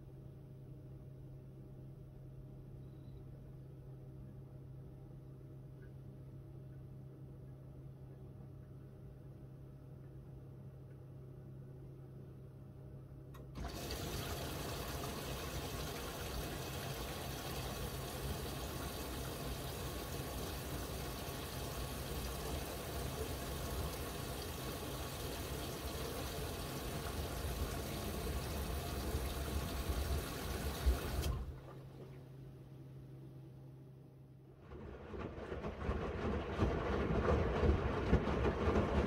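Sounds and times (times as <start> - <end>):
washing machine water rushing: 13.5 - 32.4, 34.6 - 39.0.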